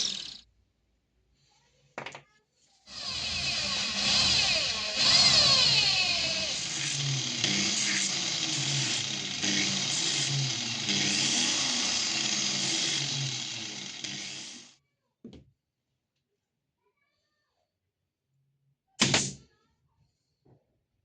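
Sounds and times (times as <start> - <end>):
power tool running: 0.0 - 0.4, 2.9 - 14.8.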